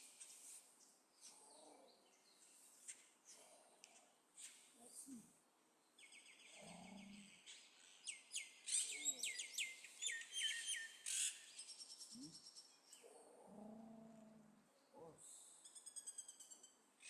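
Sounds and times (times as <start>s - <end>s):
small songbirds chirping: 0.0s - 17.0s.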